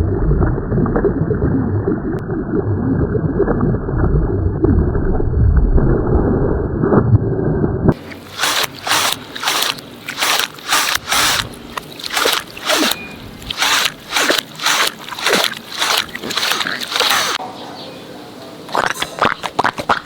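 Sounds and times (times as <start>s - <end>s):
short sharp squishing and scraping: 8.0s - 17.4s, 18.7s - 20.0s.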